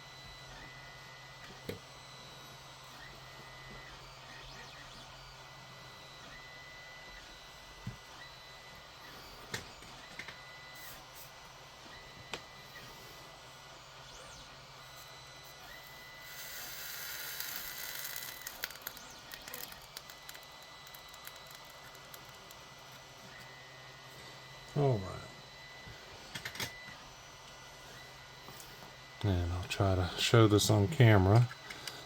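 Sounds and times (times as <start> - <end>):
solder sizzling under iron: 14.6 - 23.4
small clicks and crackles: 17.0 - 23.0.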